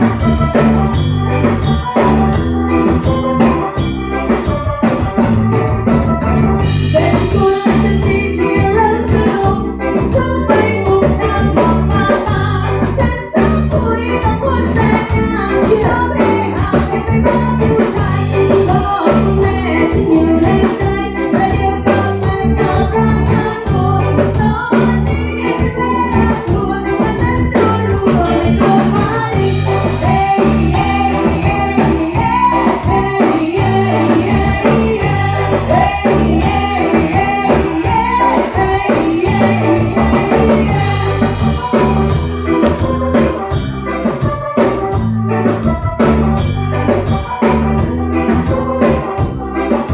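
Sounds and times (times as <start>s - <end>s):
live band music: 0.0s - 49.9s.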